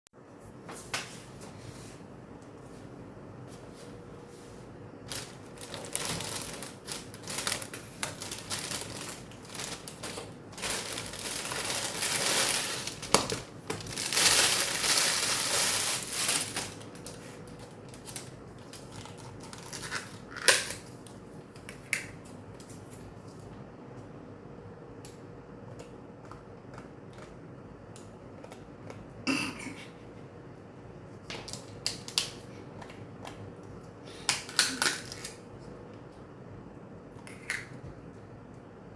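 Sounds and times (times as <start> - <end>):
plastic packaging crinkling: 5.0 - 21.0, 34.4 - 35.4.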